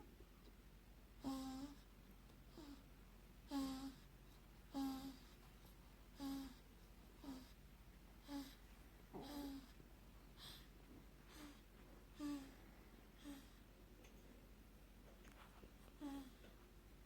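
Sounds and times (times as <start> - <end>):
baby snoring faintly: 1.2 - 5.4, 6.0 - 7.6, 8.2 - 13.7, 15.7 - 16.6.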